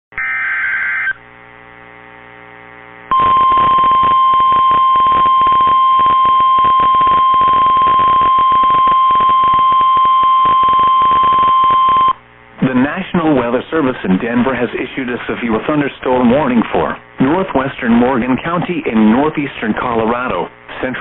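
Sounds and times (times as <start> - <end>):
faint hum: 0.4 - 21.0
radio static: 0.7 - 21.0
steady warning alarm tone: 3.1 - 12.2.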